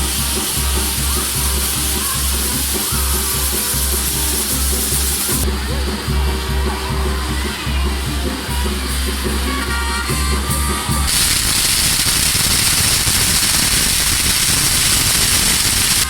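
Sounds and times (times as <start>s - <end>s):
fireworks crackling and hissing: 0.0s - 5.5s, 11.0s - 16.0s.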